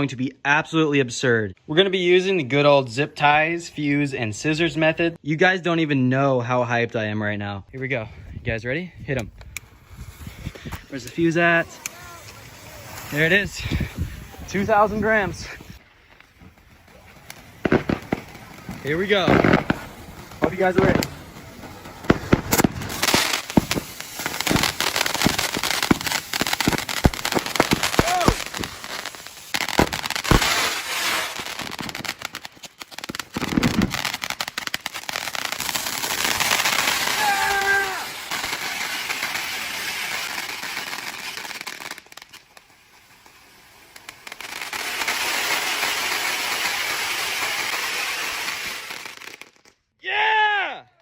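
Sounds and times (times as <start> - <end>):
firework crackles and pops: 9.2 - 49.9
firework fountains hissing: 9.4 - 49.4.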